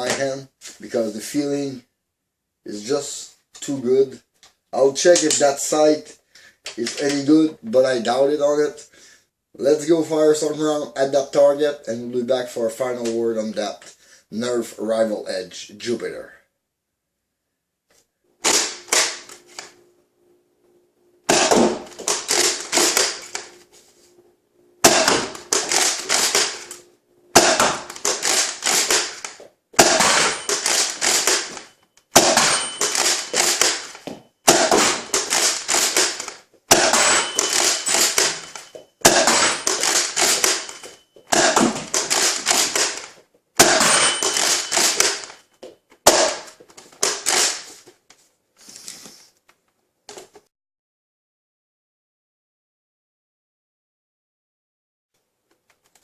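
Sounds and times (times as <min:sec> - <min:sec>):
toy blaster clacking and firing: 0:25.0 - 0:26.6, 0:27.6 - 0:45.4, 0:47.0 - 0:47.7.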